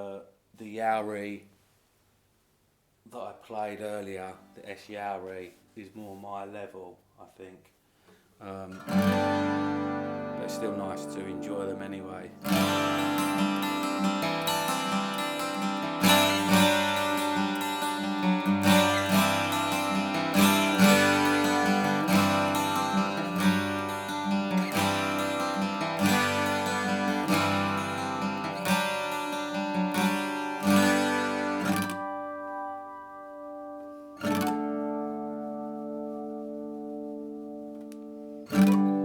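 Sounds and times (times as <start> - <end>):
acoustic guitar chords: 8.4 - 39.0.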